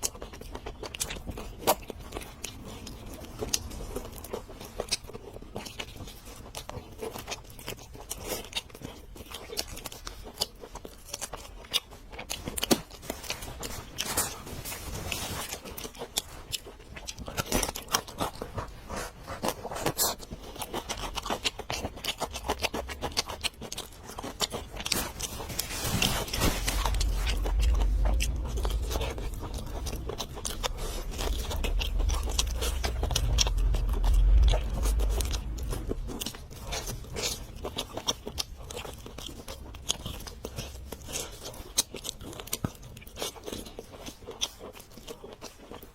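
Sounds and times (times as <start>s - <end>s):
chewing: 0.0s - 45.9s
low rumble: 0.3s - 6.6s, 24.1s - 41.5s
crunchy eating bites: 19.4s - 45.8s.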